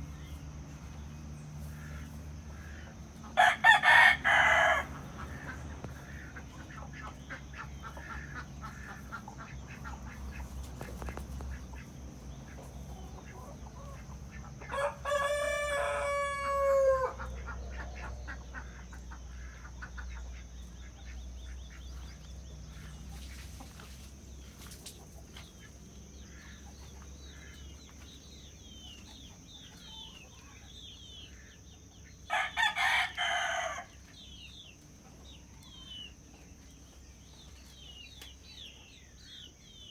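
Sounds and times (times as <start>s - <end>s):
hens clucking softly: 0.0s - 39.6s
rooster crowing: 3.4s - 5.6s, 14.6s - 17.4s, 32.3s - 34.0s.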